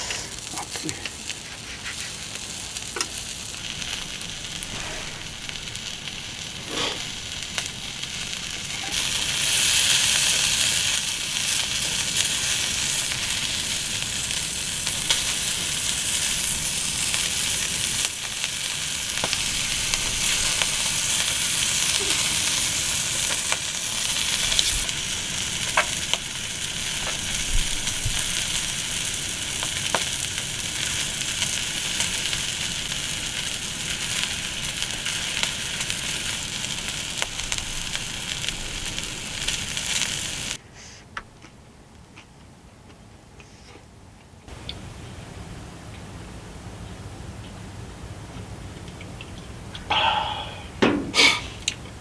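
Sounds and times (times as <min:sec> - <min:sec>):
food sizzling in a pan: 0:00.0 - 0:40.6.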